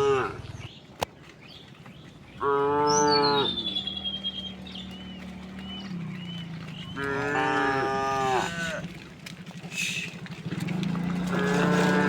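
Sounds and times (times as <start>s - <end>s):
cattle mooing: 0.0s - 0.5s, 2.4s - 9.1s, 10.0s - 12.0s.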